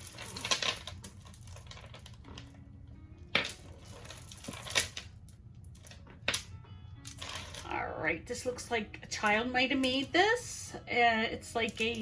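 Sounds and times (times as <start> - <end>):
jewelry pieces clicking: 0.0 - 2.1.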